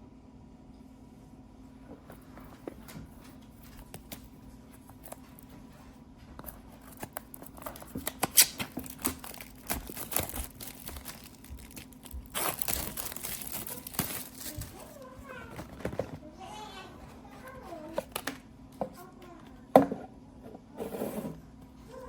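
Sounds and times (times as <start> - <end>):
faint steady hum: 0.0 - 22.0
handling clicks and crinkling: 6.4 - 16.2, 17.9 - 18.4.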